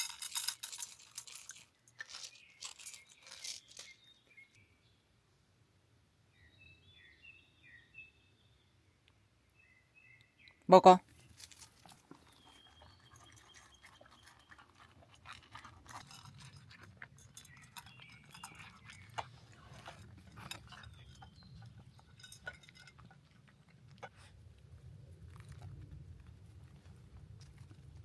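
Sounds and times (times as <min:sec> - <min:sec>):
dog crunching and chewing food: 0:00.0 - 0:04.1, 0:11.1 - 0:28.0
clinks against bowl: 0:22.0 - 0:23.1.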